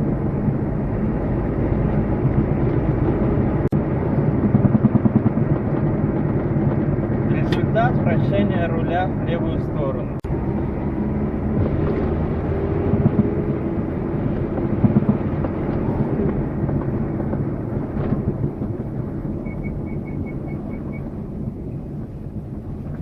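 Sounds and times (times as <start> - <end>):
car engine and road rumble: 0.0 - 23.0
knocking from car front: 14.5 - 18.8.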